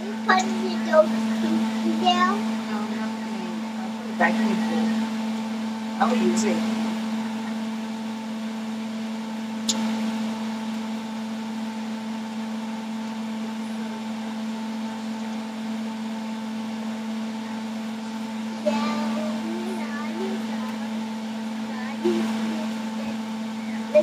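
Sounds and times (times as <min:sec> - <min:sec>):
blender motor humming: 0:00.0 - 0:24.0
sharp click: 0:09.6 - 0:09.9.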